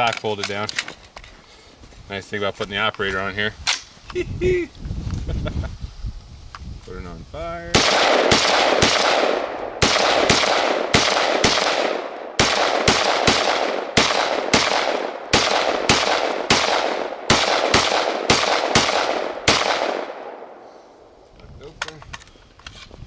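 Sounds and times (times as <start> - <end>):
rifle shots with echo: 7.8 - 21.0.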